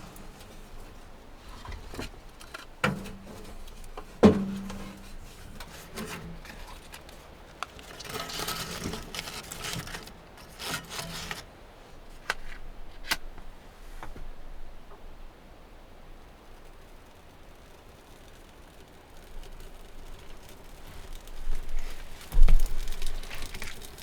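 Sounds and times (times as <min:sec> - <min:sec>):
rubbing and scraping on wood: 0:00.0 - 0:11.5.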